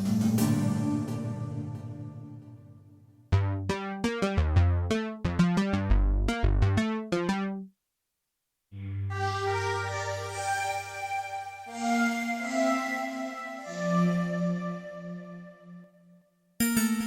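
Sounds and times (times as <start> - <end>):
synthesizer short struck notes: 3.3 - 7.6
synthesizer sustained chords: 8.8 - 15.8.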